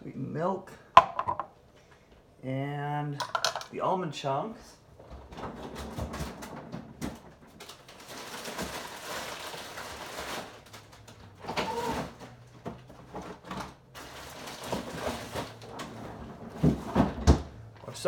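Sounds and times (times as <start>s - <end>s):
rustling: 5.1s - 18.0s.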